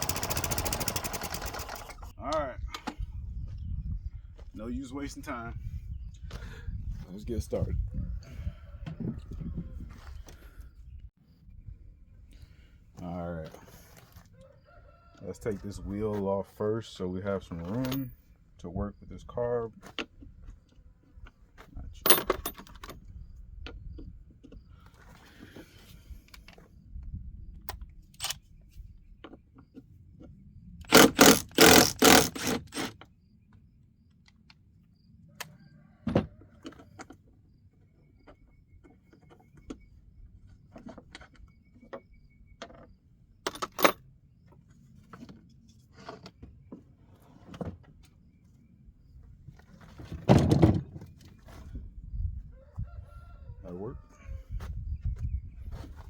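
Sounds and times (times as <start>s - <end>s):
rapid clicks: 0.0s - 2.1s
metal tools clinking: 22.0s - 22.9s.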